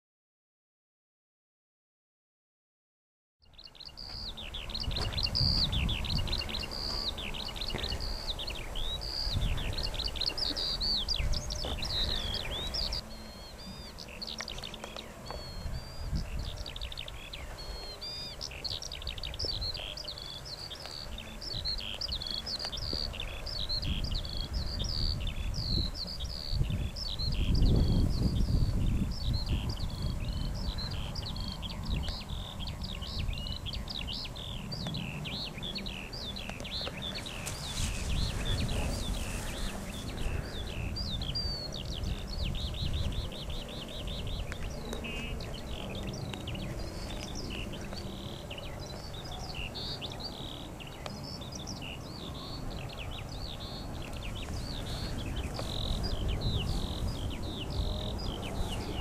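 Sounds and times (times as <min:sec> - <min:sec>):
chorus of small birds singing: 0:03.4 - 0:59.0.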